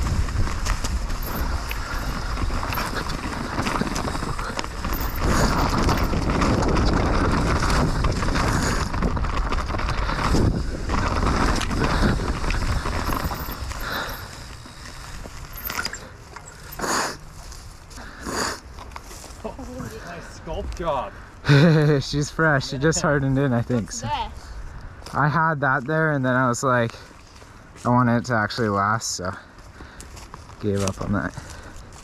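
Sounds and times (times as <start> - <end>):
wind buffeting microphone: 0.0 - 18.8
bike tyres on loose dirt: 0.0 - 32.0.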